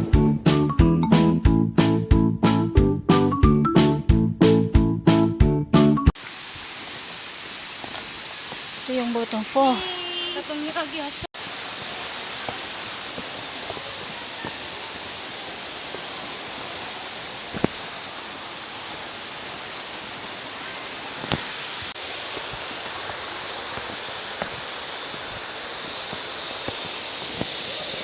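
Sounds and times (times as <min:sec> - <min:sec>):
waterfall rushing: 0:06.2 - 0:28.0.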